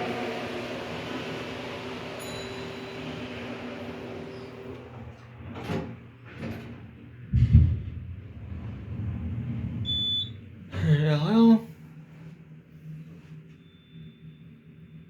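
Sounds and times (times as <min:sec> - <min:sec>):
elevator doors closing thud: 0:00.0 - 0:10.4
elevator doors sliding: 0:00.0 - 0:10.9
low rumble: 0:07.2 - 0:10.7.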